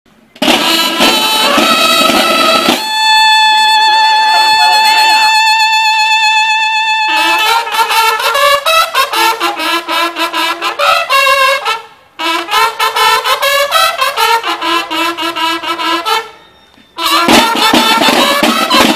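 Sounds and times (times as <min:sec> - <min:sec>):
trumpet-like brass music: 0:00.4 - 0:18.9.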